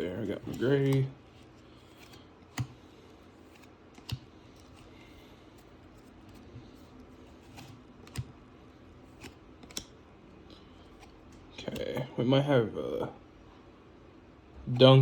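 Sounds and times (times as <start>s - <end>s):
faint card rustle: 0.0s - 8.4s, 9.0s - 12.1s
cards clicking and tapping: 0.0s - 12.1s.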